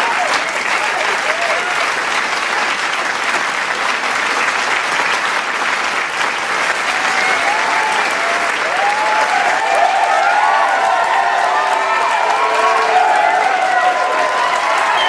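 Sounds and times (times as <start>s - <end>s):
crowd cheering and shouting: 0.0s - 2.1s, 6.7s - 15.0s
crowd applauding: 0.0s - 15.0s.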